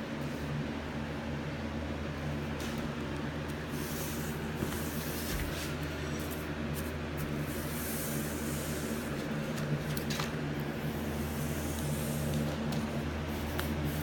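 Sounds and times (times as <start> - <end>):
steady low hum: 0.0 - 14.0
paintbrush swishing on wood: 10.8 - 14.0.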